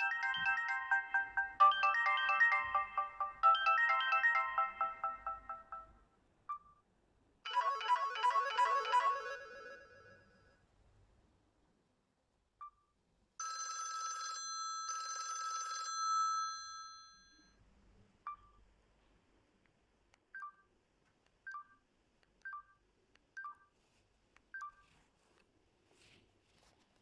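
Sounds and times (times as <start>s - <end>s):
bell-like phone alert chime: 0.0s - 6.0s, 7.5s - 10.4s.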